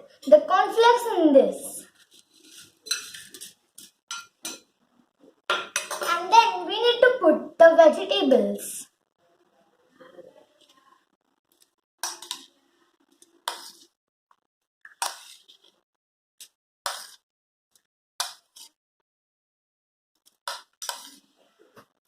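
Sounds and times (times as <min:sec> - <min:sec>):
spoon clinking against bowls: 0:02.8 - 0:04.7.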